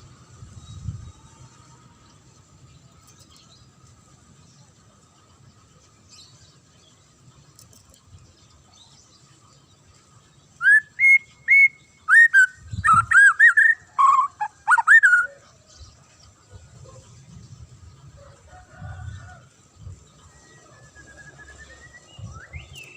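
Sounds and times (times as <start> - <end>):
bird singing whistled notes: 10.5 - 15.4, 20.2 - 22.9.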